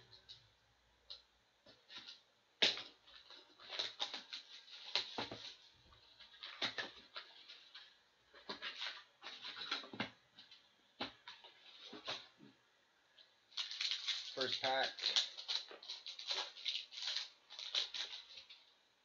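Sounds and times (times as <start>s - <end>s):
wrappers rustling and tearing: 2.8s - 9.9s, 13.5s - 18.7s.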